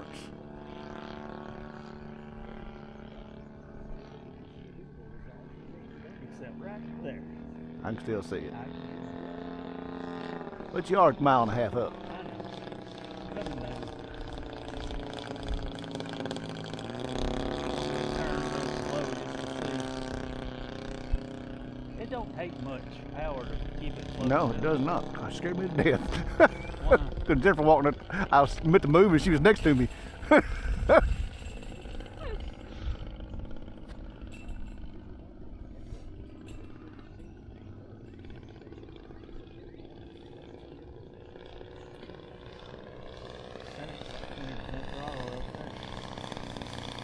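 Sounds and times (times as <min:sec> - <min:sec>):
model plane engine running: 0:00.0 - 0:47.0.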